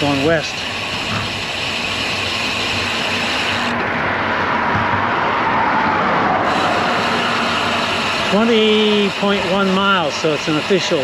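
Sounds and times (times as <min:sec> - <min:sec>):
road traffic noise: 0:00.0 - 0:11.0
vehicle passing: 0:03.7 - 0:09.6.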